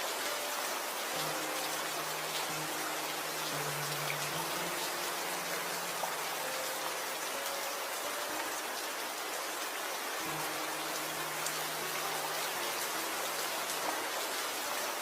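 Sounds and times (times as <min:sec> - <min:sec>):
raindrops pattering on a surface: 0:00.0 - 0:15.0
steady rain falling: 0:00.0 - 0:15.0.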